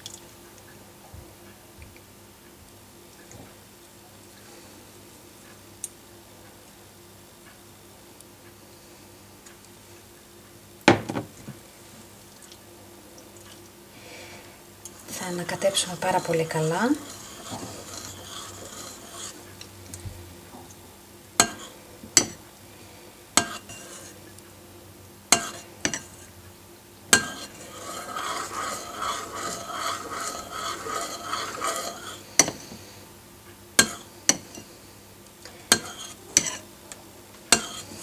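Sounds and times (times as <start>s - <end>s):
spoon swishing and scraping: 14.9s - 19.5s, 21.4s - 22.4s, 23.4s - 24.2s, 25.3s - 26.3s, 27.1s - 32.6s, 35.7s - 36.6s, 37.5s - 38.0s.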